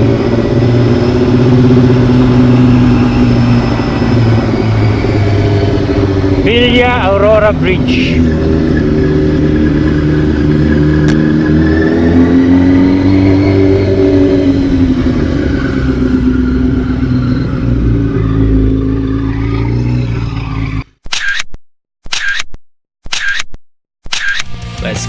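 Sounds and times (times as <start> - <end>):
motorcycle engine running: 0.0 - 20.8
road and wind noise: 0.0 - 21.5
camera shutter: 21.0 - 24.6.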